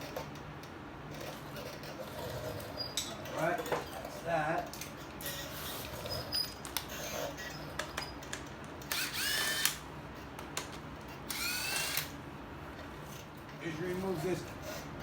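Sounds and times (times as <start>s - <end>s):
power ratchet whining: 8.8s - 9.8s, 11.3s - 12.1s.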